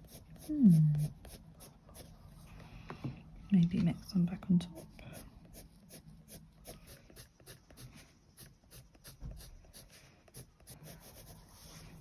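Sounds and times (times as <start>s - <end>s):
pencil shading on paper: 4.8s - 12.0s.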